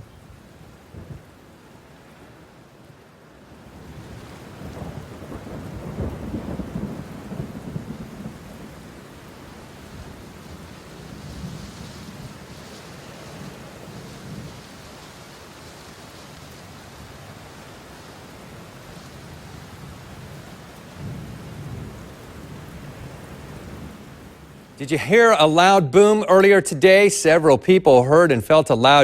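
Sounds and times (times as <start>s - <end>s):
steady hiss: 3.6s - 25.8s.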